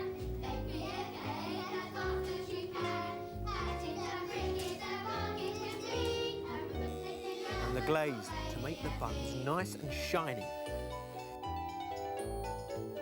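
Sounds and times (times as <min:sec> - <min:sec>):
children singing: 0:00.0 - 0:10.3.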